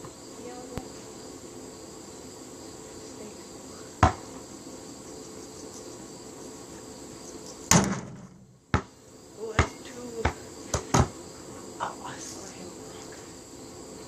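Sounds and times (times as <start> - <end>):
insects chirring: 0.0 - 14.0
basketball impact: 4.0 - 4.3, 7.7 - 8.9.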